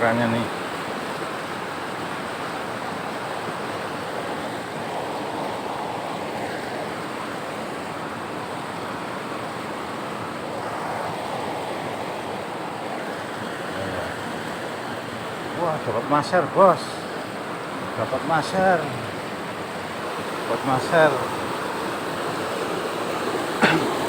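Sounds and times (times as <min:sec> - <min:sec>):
river rushing over rocks: 0:00.0 - 0:24.0.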